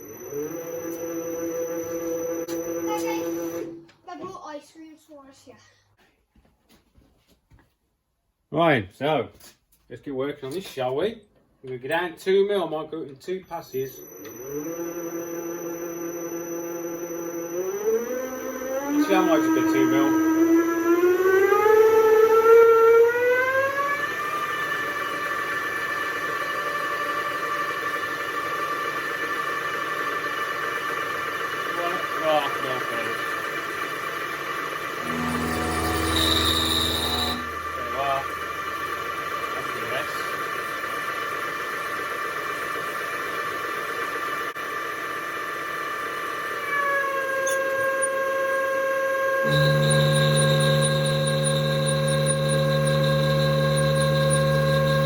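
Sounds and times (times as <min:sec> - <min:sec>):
milling machine whine: 0:00.0 - 0:03.8, 0:13.6 - 0:43.0, 0:45.1 - 0:55.0
deep hum: 0:35.0 - 0:39.7, 0:49.5 - 0:55.0
milling machine cutting metal: 0:35.0 - 0:41.1, 0:46.6 - 0:48.7, 0:49.5 - 0:55.0.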